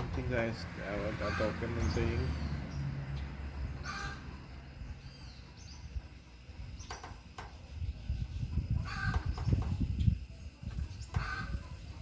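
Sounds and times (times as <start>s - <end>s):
wind rumbling on microphone: 5.7s - 12.0s.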